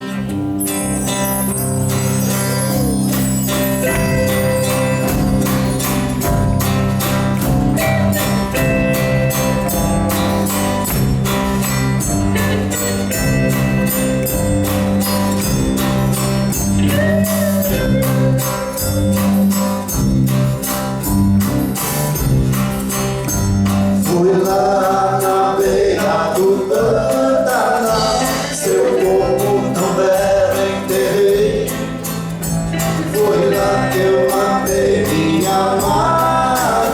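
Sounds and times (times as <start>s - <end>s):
bass: 0.0s - 36.9s
strummed acoustic guitar: 0.0s - 36.9s
higher melody line: 0.1s - 24.3s
jingling tambourine percussion: 0.6s - 36.9s.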